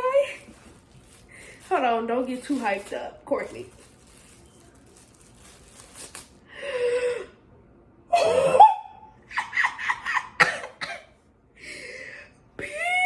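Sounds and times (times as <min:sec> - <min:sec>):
woman squealing and crying out: 0:08.1 - 0:09.5.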